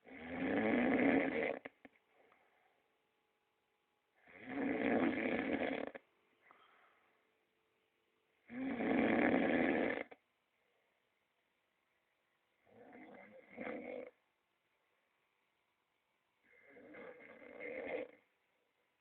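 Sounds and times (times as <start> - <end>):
person snoring loudly: 0.0 - 1.7, 4.2 - 6.0, 8.5 - 10.2, 16.6 - 18.2.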